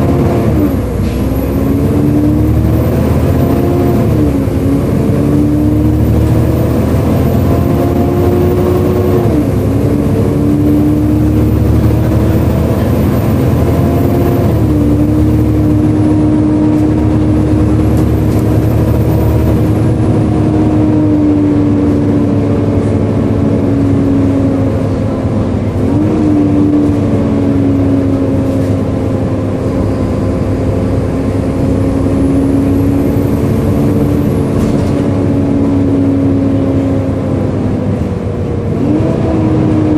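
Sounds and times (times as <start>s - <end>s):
diesel engine rumbling: 0.0s - 39.9s.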